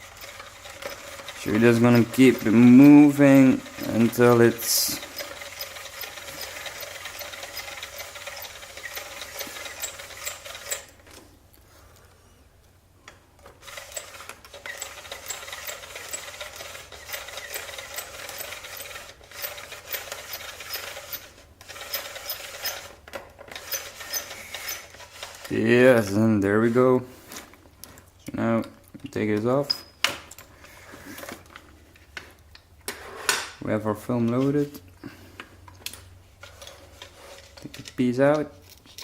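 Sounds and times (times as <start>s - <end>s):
film loader clicking and rubbing: 0.0s - 11.2s, 13.4s - 25.6s.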